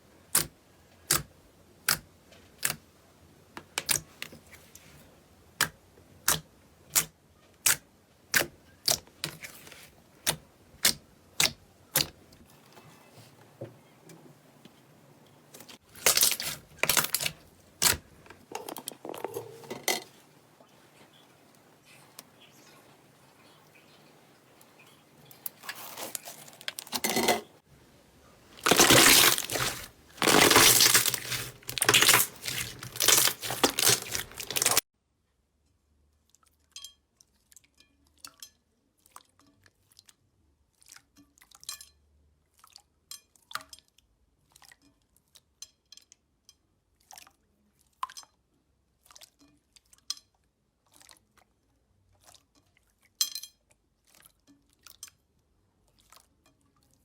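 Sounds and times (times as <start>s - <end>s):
slime crackling and popping: 15.9s - 18.1s, 28.6s - 34.8s.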